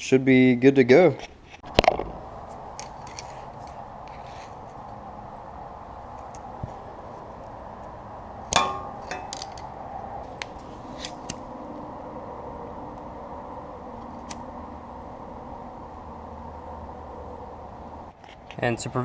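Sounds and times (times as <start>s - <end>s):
metal tools clicking and tapping: 8.5s - 9.7s
metal clank with ring: 8.6s - 9.4s.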